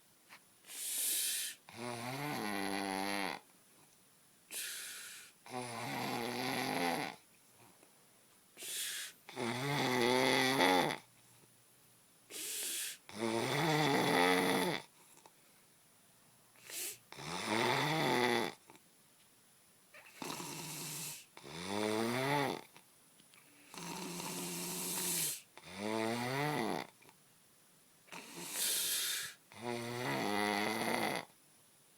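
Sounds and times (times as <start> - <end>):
breathy hissing breath: 0.6 - 1.7, 4.5 - 5.4, 8.6 - 9.3, 12.3 - 13.1, 16.6 - 17.1, 20.1 - 21.4, 23.4 - 25.5, 28.1 - 29.6
person snoring heavily: 0.7 - 3.4, 4.5 - 7.2, 8.6 - 11.1, 12.3 - 14.9, 16.6 - 18.6, 20.1 - 22.7, 23.7 - 27.0, 28.1 - 31.3.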